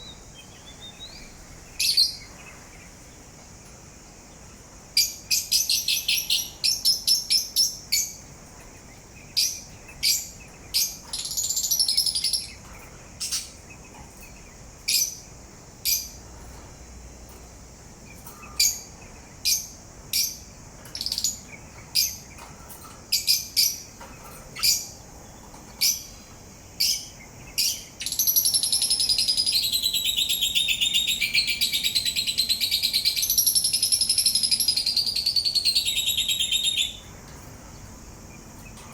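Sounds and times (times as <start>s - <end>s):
parrot chirping: 26.8s - 37.0s.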